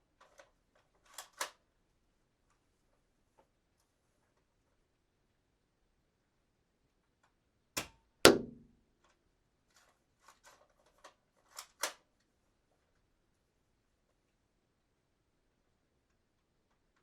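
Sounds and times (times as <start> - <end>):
dart gun shot: 7.8 - 8.7.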